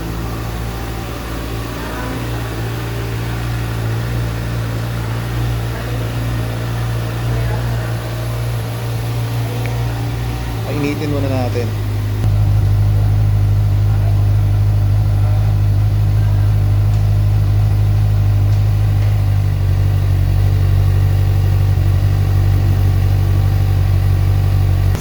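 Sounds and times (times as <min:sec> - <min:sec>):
motorcycle engine idling: 0:00.0 - 0:25.0.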